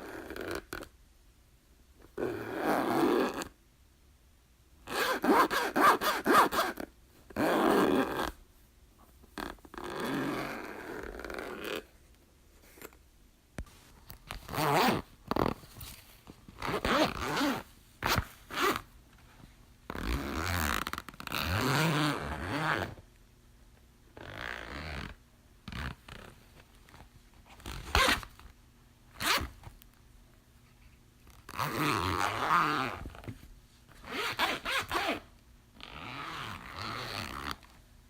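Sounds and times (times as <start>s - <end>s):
clothing zipper zipping: 0.0s - 0.9s, 2.2s - 3.5s, 4.9s - 8.4s, 9.4s - 11.9s, 14.3s - 16.0s, 16.6s - 18.9s, 19.9s - 23.0s, 24.2s - 26.3s, 27.6s - 28.3s, 29.2s - 29.6s, 31.3s - 33.3s, 34.0s - 37.7s.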